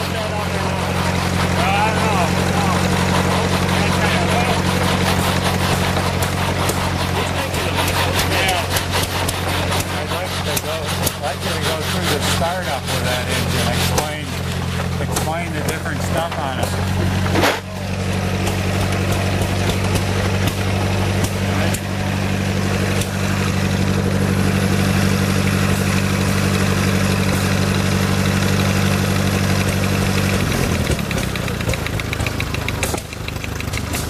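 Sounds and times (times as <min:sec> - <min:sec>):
old car engine running: 0:00.0 - 0:34.0
fast even ticking: 0:29.6 - 0:34.0.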